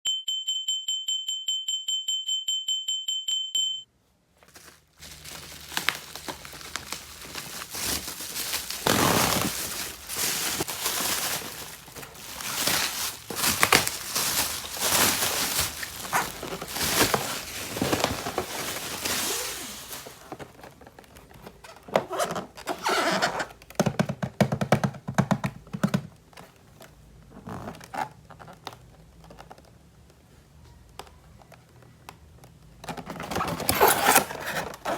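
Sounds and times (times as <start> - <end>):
plastic packaging crinkling and tearing: 4.4 - 23.2, 33.0 - 34.9.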